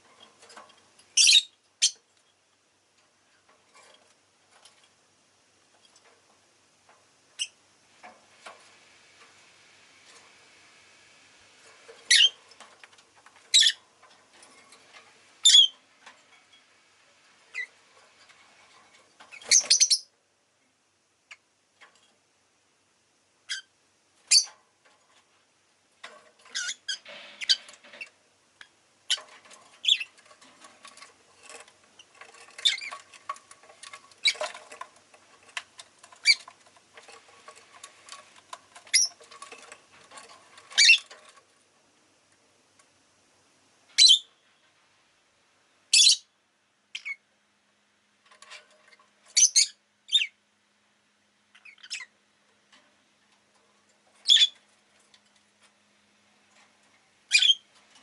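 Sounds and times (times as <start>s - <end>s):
lovebird chirping: 1.2s - 2.0s, 15.4s - 15.8s, 19.3s - 20.1s, 29.8s - 30.1s, 44.0s - 44.3s, 45.9s - 46.3s, 46.9s - 47.2s, 54.2s - 54.6s, 57.3s - 57.6s.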